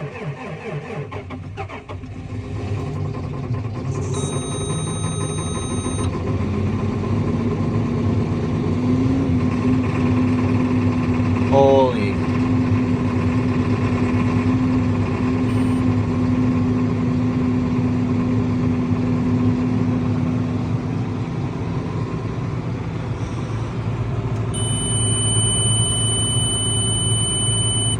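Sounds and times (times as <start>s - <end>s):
diesel tractor idling: 3.0s - 8.7s, 9.4s - 27.9s
high-pitched electronic tone: 4.0s - 6.1s, 24.6s - 27.9s.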